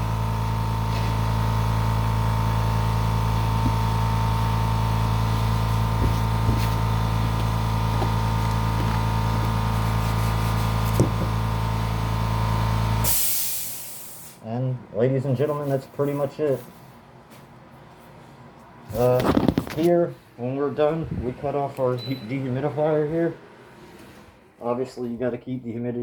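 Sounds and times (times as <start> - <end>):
air compressor motor hum: 0.0 - 14.4.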